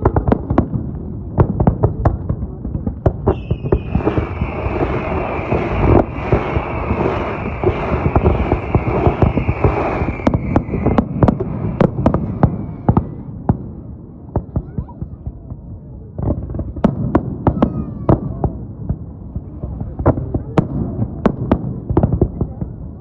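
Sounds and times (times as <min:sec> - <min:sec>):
fireworks bangs: 0:00.0 - 0:23.0
high firework whistle: 0:03.2 - 0:13.3.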